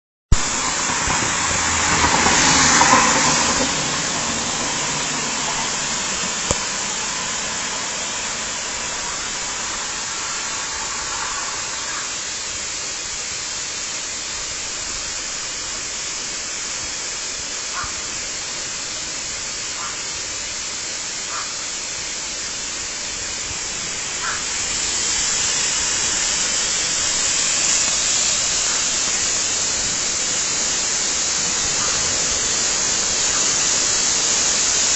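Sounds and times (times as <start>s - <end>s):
waterfall rushing: 0.3s - 34.9s.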